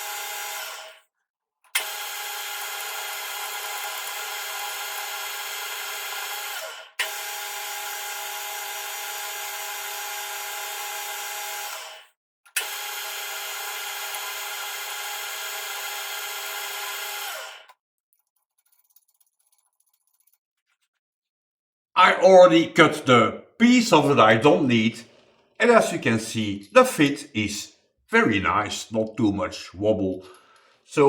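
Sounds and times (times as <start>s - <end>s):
machine tool motor whining: 0.0s - 1.0s, 1.8s - 17.8s.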